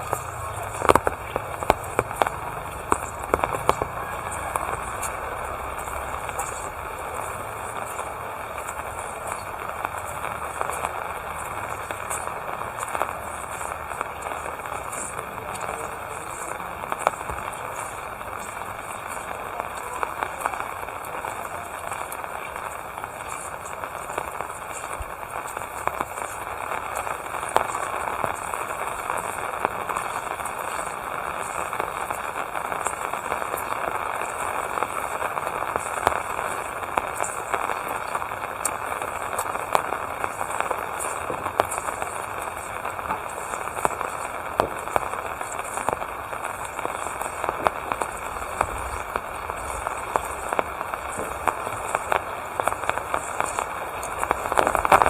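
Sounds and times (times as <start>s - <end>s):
rain falling: 0.0s - 55.0s
raindrop impacts: 0.0s - 55.0s.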